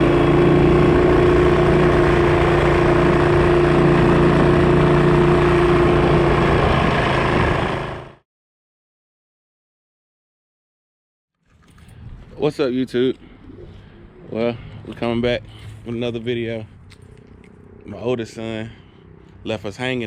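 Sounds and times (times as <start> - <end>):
small engine idling: 0.0 - 8.2.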